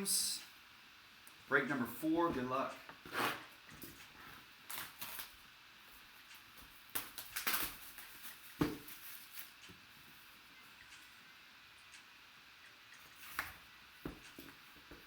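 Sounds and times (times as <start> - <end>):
card packaging rustling: 4.7 - 5.4, 6.9 - 9.9
packaging crinkles and taps: 6.6 - 9.8.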